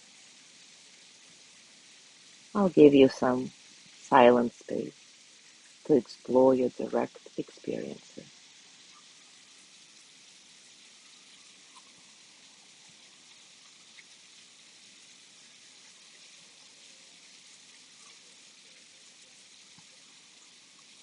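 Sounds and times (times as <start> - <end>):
faint background hiss: 0.0 - 21.0
faint ticks: 7.1 - 21.0.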